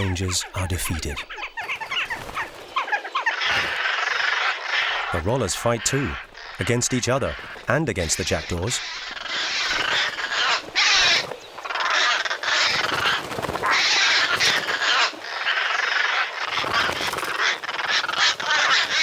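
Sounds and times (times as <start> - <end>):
birds calling harshly: 0.0 - 19.0.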